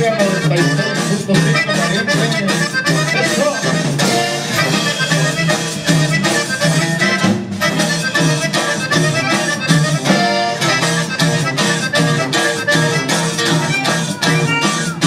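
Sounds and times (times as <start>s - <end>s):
accordion melody: 0.0s - 15.0s
steady bass beat: 11.2s - 15.0s.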